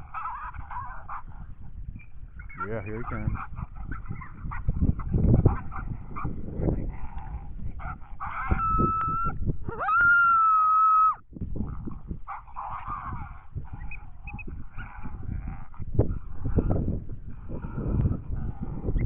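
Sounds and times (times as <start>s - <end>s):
coyote barking and growling: 0.0s - 19.0s
coyote howls: 7.2s - 15.6s.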